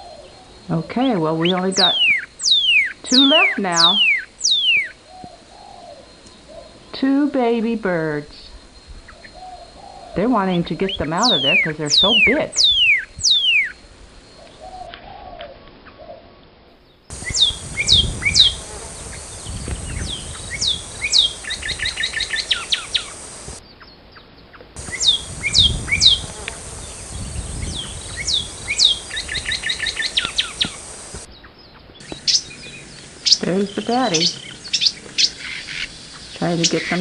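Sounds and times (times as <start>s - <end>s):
cardinal singing: 3.0s - 4.0s.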